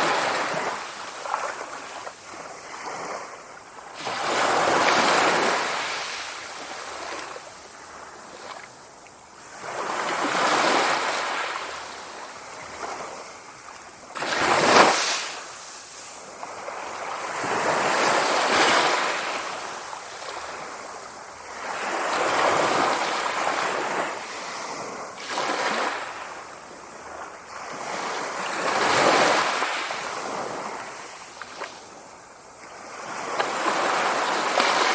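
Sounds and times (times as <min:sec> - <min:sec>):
sea waves breaking: 0:00.0 - 0:08.7, 0:09.4 - 0:32.0, 0:32.6 - 0:34.9.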